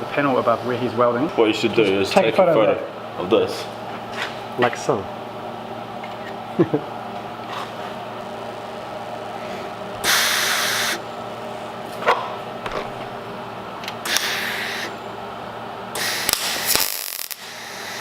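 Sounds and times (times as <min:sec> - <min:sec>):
steady hum: 0:00.0 - 0:18.0
welder hissing: 0:10.0 - 0:11.0, 0:14.1 - 0:14.9, 0:15.9 - 0:18.0.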